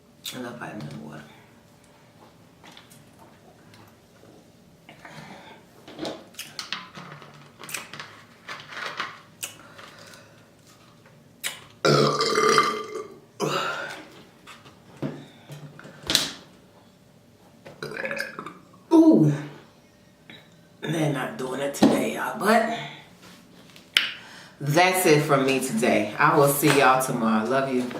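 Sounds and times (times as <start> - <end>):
woman burping: 11.8 - 14.1, 17.8 - 19.5.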